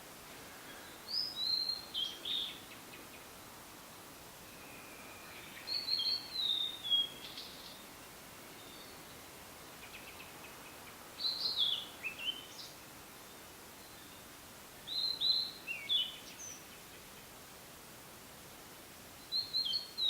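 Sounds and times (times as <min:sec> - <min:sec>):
background hiss: 0:00.0 - 0:20.0
bird whistling song: 0:01.1 - 0:02.6, 0:04.6 - 0:07.8, 0:11.2 - 0:12.7, 0:14.9 - 0:16.6, 0:19.3 - 0:20.0.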